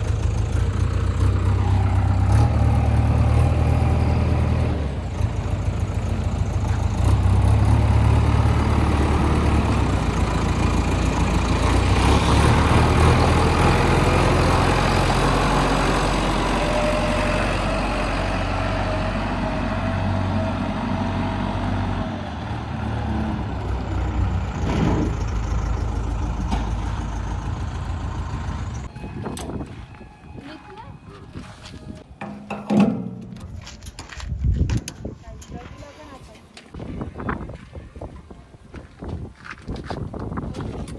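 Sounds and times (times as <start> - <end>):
diesel engine running hard: 0.0 - 28.9.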